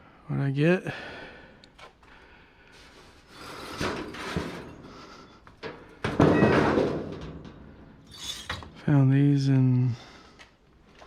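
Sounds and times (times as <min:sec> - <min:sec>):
scrap scraping and rubbing: 0:08.1 - 0:08.8.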